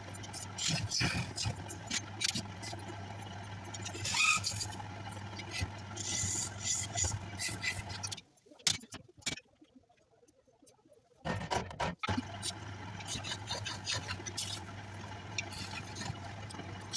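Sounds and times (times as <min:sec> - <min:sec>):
wood lathe motor hum: 0:00.0 - 0:08.2, 0:12.1 - 0:16.9.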